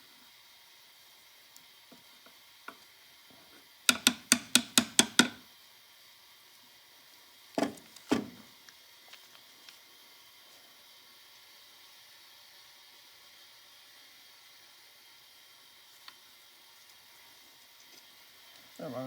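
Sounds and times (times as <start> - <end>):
dull knocks: 3.9 - 5.4, 7.6 - 8.4
light hammer taps: 3.9 - 5.4.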